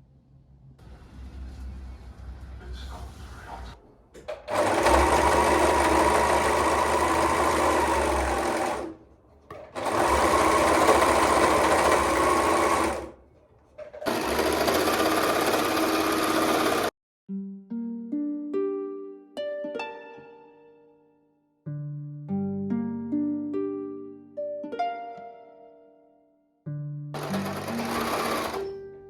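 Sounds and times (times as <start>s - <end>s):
electric sewing machine stitching: 4.3s - 13.2s, 13.8s - 16.9s, 27.2s - 28.8s.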